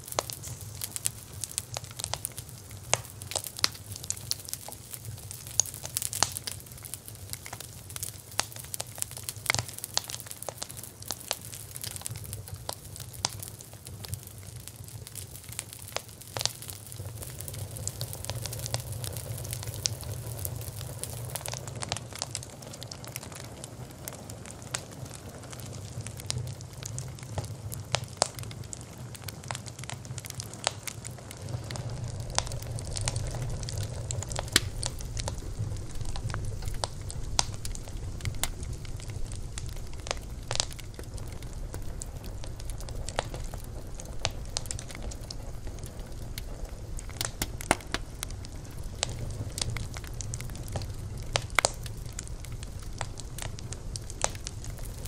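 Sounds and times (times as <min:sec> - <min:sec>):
campfire crackling and popping: 0:00.0 - 0:55.0
low rumble of flames: 0:00.0 - 0:55.0.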